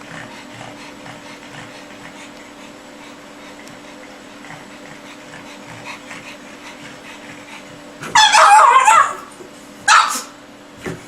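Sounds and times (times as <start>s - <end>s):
faint steady hum: 0.0s - 11.0s
dog crying loudly: 8.0s - 9.3s, 9.9s - 10.4s.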